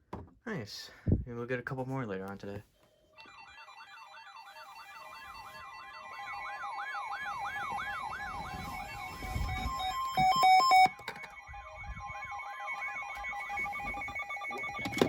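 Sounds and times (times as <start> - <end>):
electronic siren yelping: 3.1 - 15.0.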